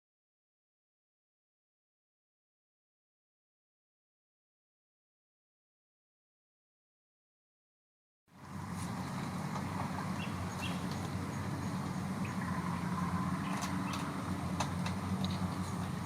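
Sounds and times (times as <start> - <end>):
low mechanical drone: 8.3 - 16.0
light clicks and ticks: 13.5 - 15.9.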